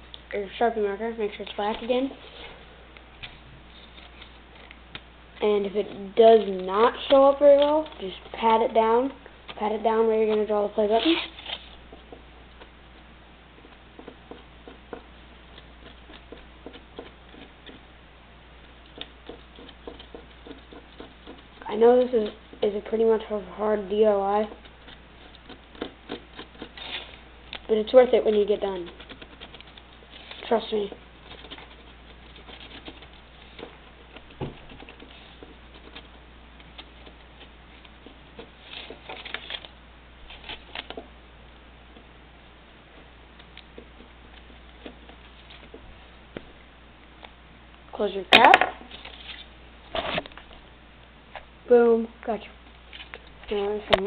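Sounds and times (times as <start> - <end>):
marker scratching on foil: 5.4 - 12.7, 13.6 - 17.9, 18.7 - 41.0.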